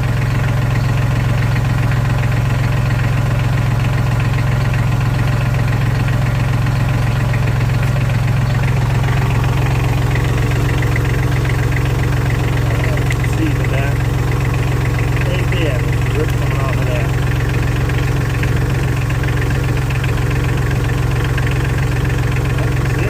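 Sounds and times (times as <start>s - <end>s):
tractor engine idling: 0.0s - 23.0s.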